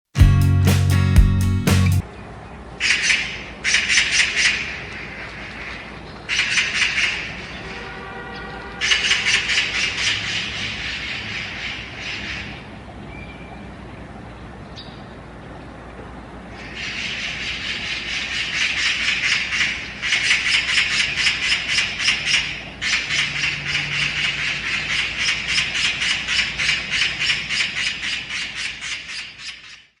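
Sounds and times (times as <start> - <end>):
magpie chattering: 16.6 - 29.9.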